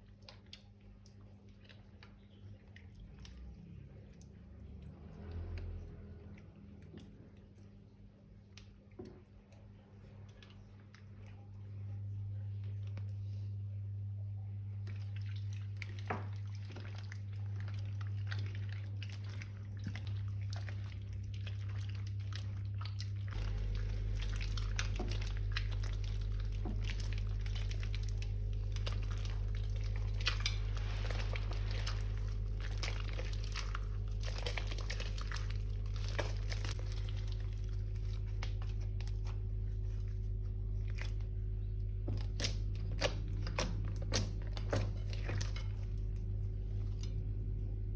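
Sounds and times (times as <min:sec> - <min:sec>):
steady low hum: 0:00.0 - 0:47.9
slime squished by hand: 0:14.8 - 0:47.4.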